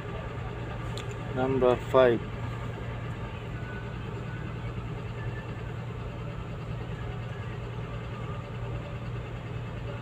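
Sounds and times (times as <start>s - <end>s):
diesel engine idling: 0.0s - 10.0s.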